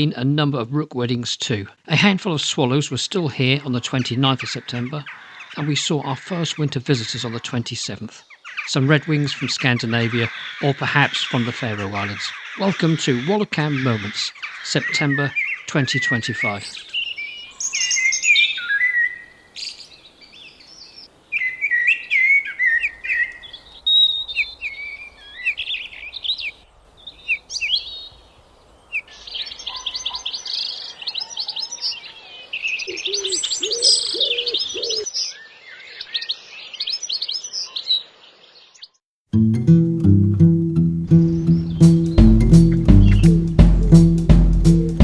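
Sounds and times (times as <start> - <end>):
birds chirping and twittering: 2.4 - 39.0, 41.2 - 45.0
low warbling bird call: 32.6 - 35.1, 41.2 - 45.0.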